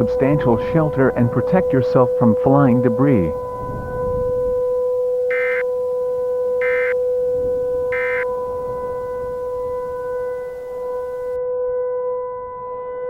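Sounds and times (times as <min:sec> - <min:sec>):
steady electronic drone tone: 0:00.0 - 0:11.6
buzzy digital data bursts: 0:05.3 - 0:05.7, 0:06.6 - 0:07.0, 0:07.9 - 0:11.4.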